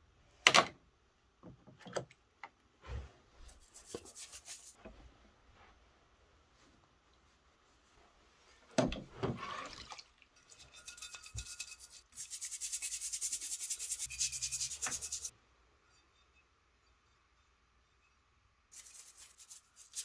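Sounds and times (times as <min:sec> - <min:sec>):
rapid scrubbing strokes: 0:10.5 - 0:15.3.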